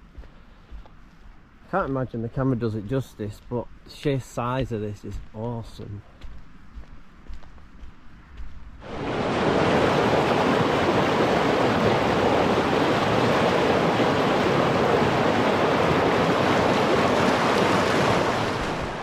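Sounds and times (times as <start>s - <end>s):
stream water rushing: 8.8s - 19.0s.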